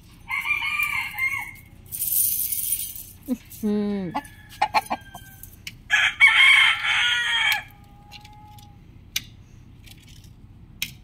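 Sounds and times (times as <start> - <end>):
rooster crowing: 0.3 - 1.7, 4.1 - 8.8.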